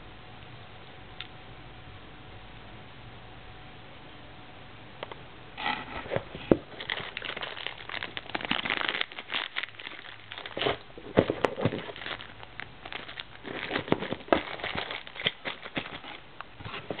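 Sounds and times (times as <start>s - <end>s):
packaging crinkling and rustling: 5.6s - 17.0s.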